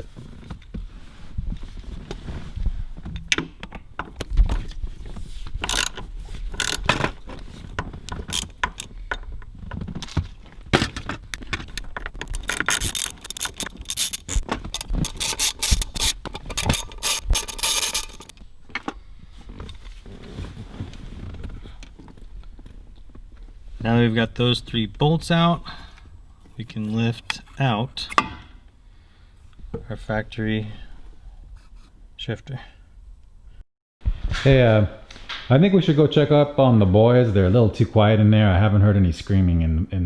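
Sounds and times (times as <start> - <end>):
ratchet wrench clicking: 5.6 - 6.9, 8.2 - 8.9, 12.3 - 18.3.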